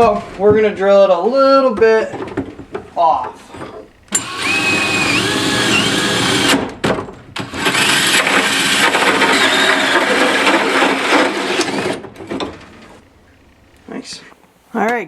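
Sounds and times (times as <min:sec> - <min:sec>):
power drill whining: 0:03.5 - 0:06.8, 0:07.4 - 0:13.9.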